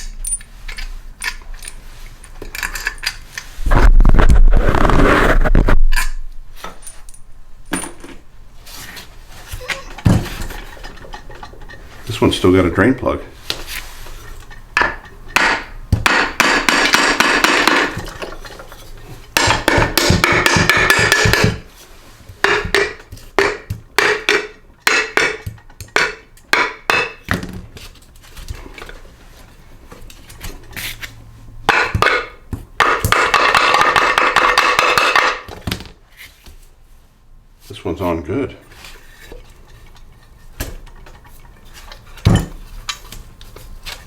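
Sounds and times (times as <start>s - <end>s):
metal clinks and knocks: 6.1s - 8.2s, 9.9s - 12.1s.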